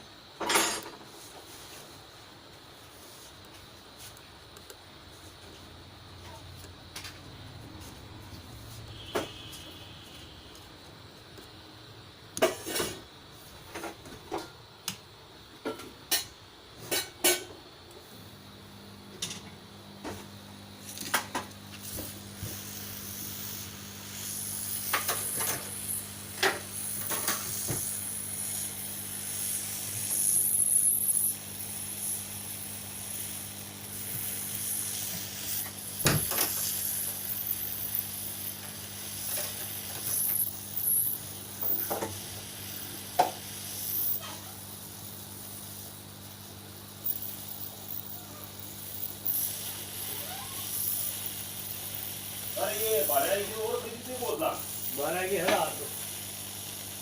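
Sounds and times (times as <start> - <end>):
small tools clicking and tapping: 24.7 - 28.0.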